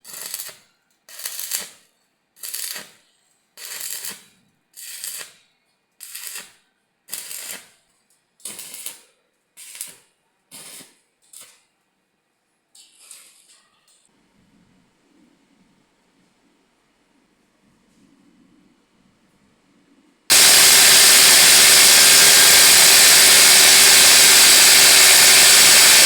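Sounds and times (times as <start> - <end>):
welding bursts: 7.1 - 7.6, 20.3 - 26.0.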